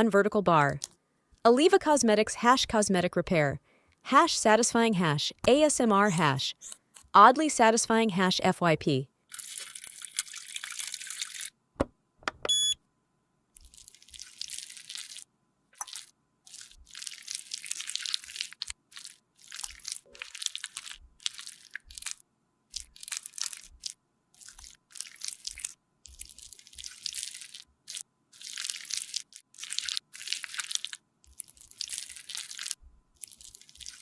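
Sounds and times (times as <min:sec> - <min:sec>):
electronic beep: 0:12.4 - 0:12.8.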